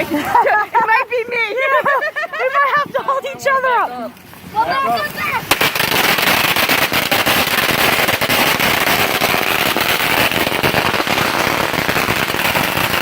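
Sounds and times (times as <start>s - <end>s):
ground firework crackling: 4.4s - 13.0s.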